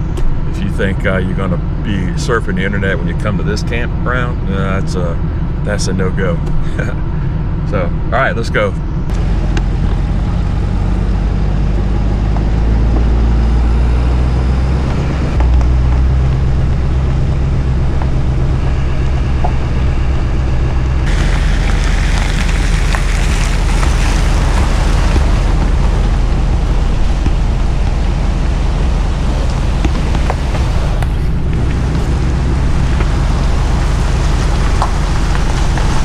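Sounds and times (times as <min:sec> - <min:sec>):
road noise: 0:00.0 - 0:36.0
tyre or wind hiss: 0:21.1 - 0:25.6, 0:32.9 - 0:36.0
car engine running: 0:21.1 - 0:36.0.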